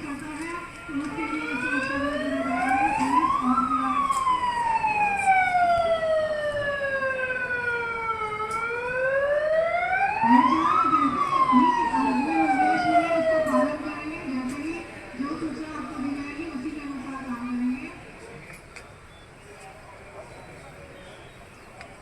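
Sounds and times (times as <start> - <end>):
siren wailing: 0.9 - 14.3.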